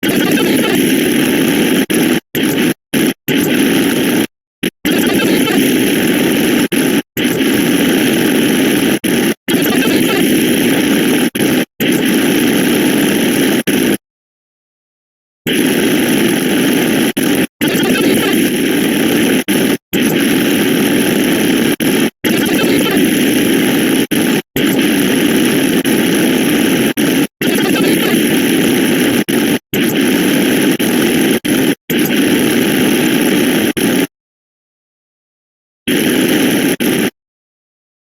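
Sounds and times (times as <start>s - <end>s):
harsh jumble of sound effects: 22.3s - 23.2s.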